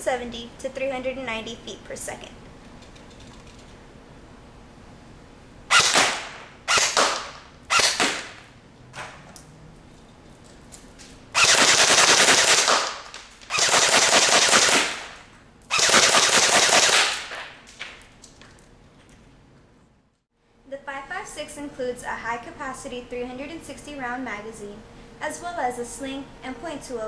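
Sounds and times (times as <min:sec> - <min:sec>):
airsoft rifle firing bursts: 0:05.7 - 0:08.4, 0:11.4 - 0:17.3.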